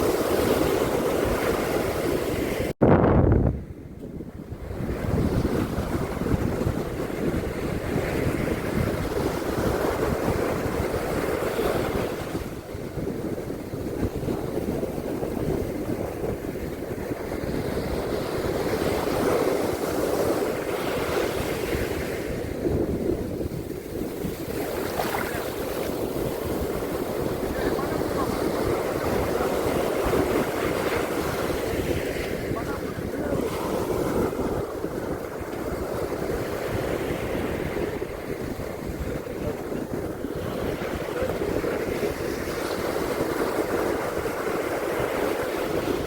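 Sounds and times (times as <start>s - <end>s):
surf washing onto beach: 0.0s - 2.7s, 4.4s - 46.0s
wind buffeting microphone: 0.0s - 46.0s.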